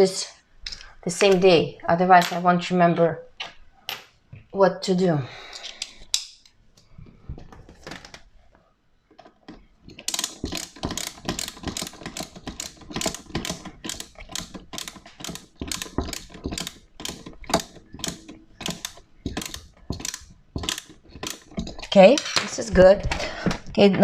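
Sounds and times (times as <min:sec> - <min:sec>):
ratcheting screwdriver clicking: 0:09.9 - 0:22.3.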